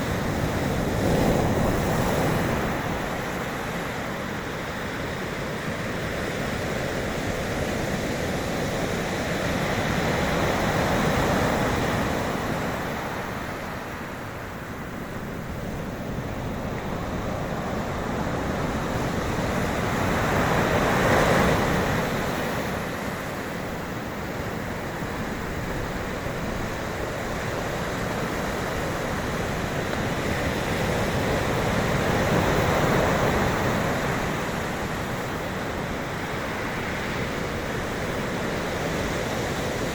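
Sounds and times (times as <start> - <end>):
sea waves breaking: 8.0 - 39.9.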